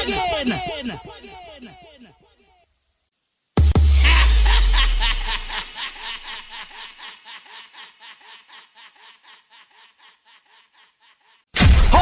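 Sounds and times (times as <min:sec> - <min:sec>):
deep bass boom: 0:03.6 - 0:05.7
snickering laugh sound effect: 0:04.0 - 0:11.4.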